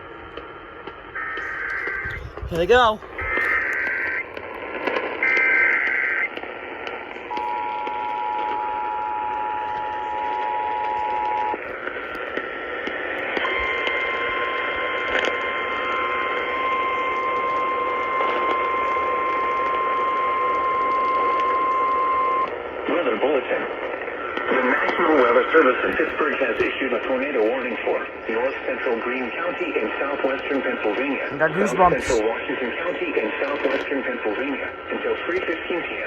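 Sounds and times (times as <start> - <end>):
radio static: 1.3 - 4.2, 31.4 - 32.2.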